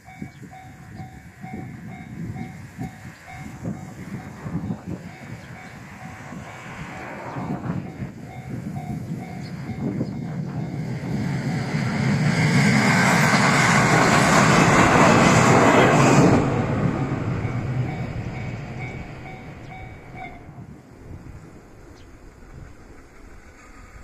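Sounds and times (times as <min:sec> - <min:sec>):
level crossing warning bell: 0:00.0 - 0:06.4, 0:07.8 - 0:10.8, 0:17.3 - 0:20.6
electric train passing: 0:00.0 - 0:24.0.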